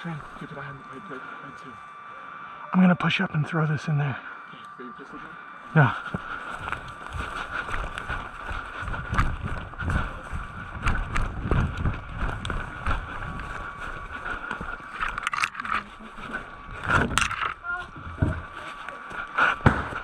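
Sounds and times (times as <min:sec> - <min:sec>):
footsteps: 0:04.5 - 0:20.0
gear jostling camera: 0:06.1 - 0:17.6.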